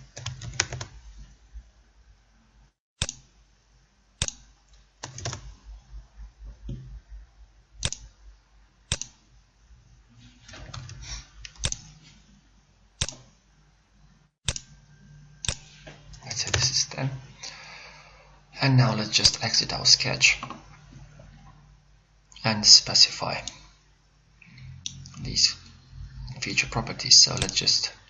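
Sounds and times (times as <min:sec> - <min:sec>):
mouse and keyboard clicks: 0:10.7 - 0:11.9, 0:13.0 - 0:13.3, 0:27.4 - 0:27.6.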